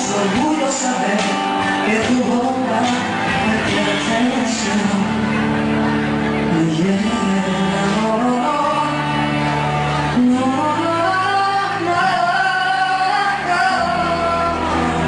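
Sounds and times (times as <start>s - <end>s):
band accompaniment: 0.0s - 15.0s
person singing long notes: 0.0s - 15.0s.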